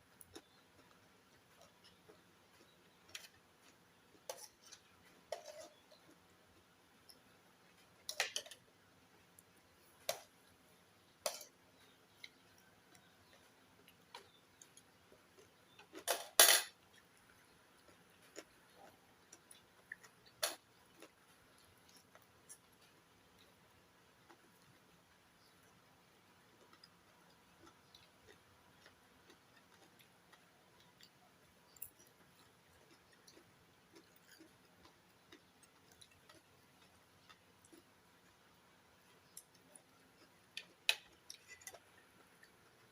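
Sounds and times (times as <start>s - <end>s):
person eating: 0.2s - 16.1s, 16.8s - 23.6s, 26.5s - 42.9s
eating crunches and clicks: 16.7s - 23.6s, 26.4s - 38.4s.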